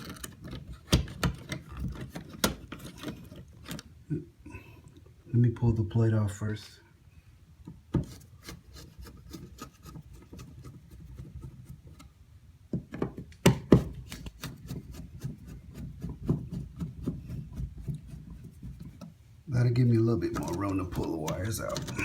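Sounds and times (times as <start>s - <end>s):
plastic plate scraping and clicking: 0.0s - 3.9s, 20.2s - 22.0s.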